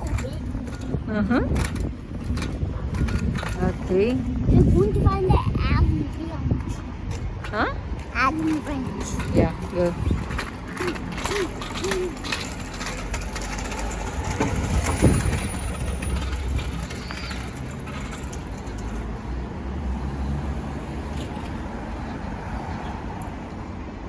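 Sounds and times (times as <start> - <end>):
wind buffeting microphone: 0.0 - 18.9
heavy vehicle engine rumble: 0.0 - 22.4.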